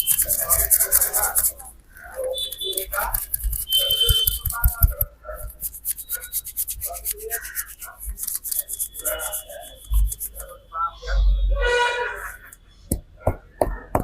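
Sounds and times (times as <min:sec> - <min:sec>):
hands rubbing head and hair: 0:00.0 - 0:01.8, 0:02.6 - 0:10.6.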